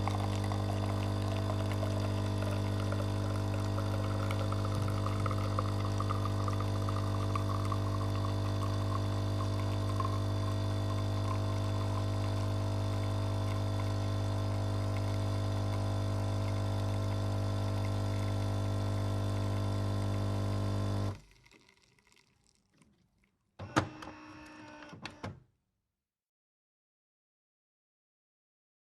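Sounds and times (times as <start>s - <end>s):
coffee machine humming: 0.0s - 21.6s, 23.6s - 24.9s.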